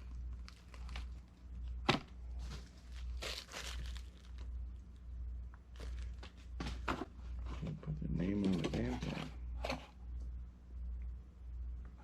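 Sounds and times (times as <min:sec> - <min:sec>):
plastic packaging rustling: 0:00.0 - 0:04.6, 0:05.7 - 0:07.7
low steady hum: 0:00.0 - 0:12.0.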